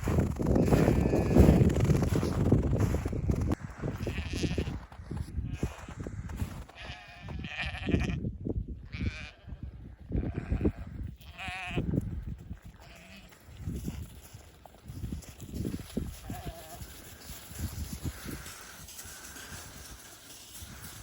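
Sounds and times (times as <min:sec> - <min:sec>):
sheep bleating: 0:00.6 - 0:01.7, 0:04.0 - 0:05.8, 0:06.7 - 0:08.2, 0:10.2 - 0:12.0, 0:12.7 - 0:13.5, 0:16.1 - 0:17.5.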